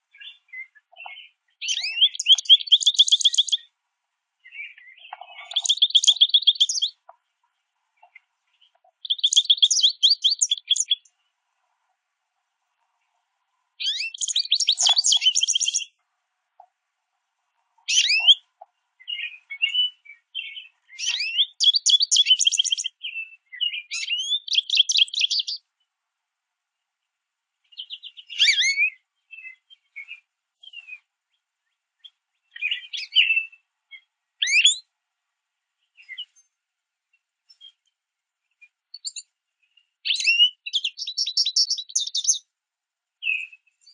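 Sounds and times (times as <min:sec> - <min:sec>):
finches twittering: 0:00.2 - 0:03.6, 0:04.5 - 0:07.1, 0:08.0 - 0:11.1, 0:13.8 - 0:15.9, 0:17.9 - 0:18.4, 0:19.1 - 0:23.2.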